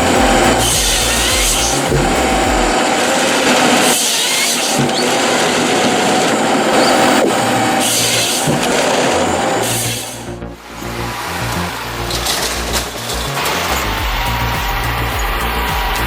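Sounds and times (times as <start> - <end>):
background music with low bass: 0.0 - 2.8, 9.3 - 16.0
machinery whining: 0.0 - 16.0.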